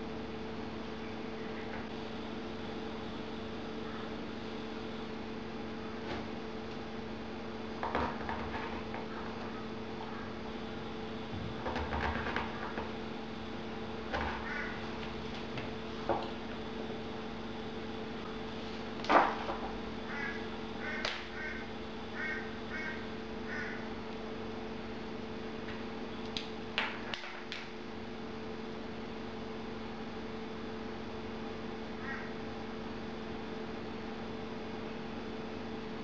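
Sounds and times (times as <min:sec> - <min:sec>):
steady hum: 0:00.0 - 0:36.0
harsh animal calls: 0:14.3 - 0:15.0, 0:20.0 - 0:23.9, 0:32.0 - 0:32.4.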